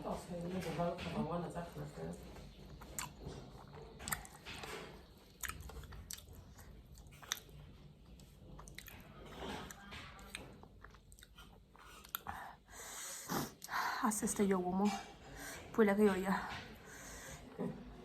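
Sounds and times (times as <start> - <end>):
person chewing crunchy food: 2.2 - 12.7.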